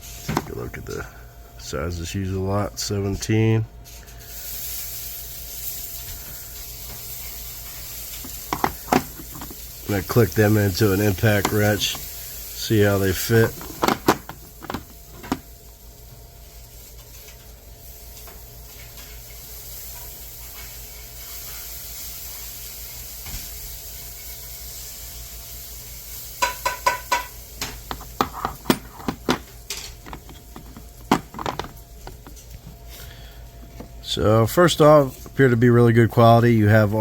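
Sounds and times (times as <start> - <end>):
faint steady hiss: 0.0 - 37.0
metal sockets clicking and clinking: 8.2 - 12.1, 13.0 - 15.5, 27.2 - 32.8.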